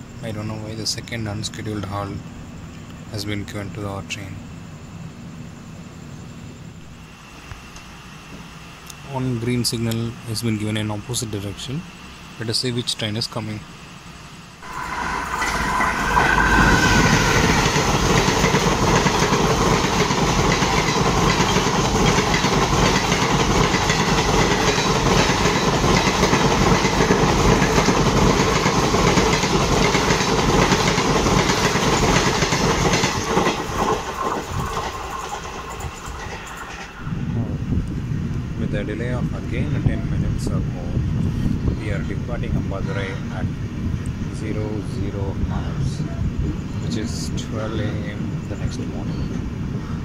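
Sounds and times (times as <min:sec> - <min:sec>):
train wheels running on rails: 0:14.6 - 0:39.9.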